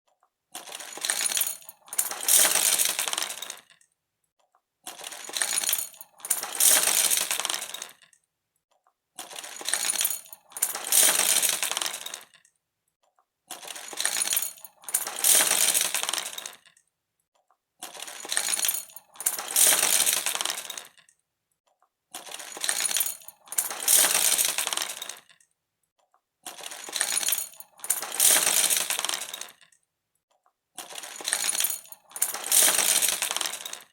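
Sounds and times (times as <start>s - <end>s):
small hard objects clattering: 30.8s - 33.9s.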